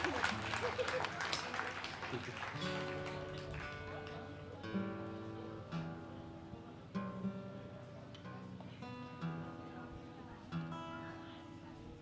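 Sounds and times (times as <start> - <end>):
guitar picking slow chords: 2.6 - 11.6.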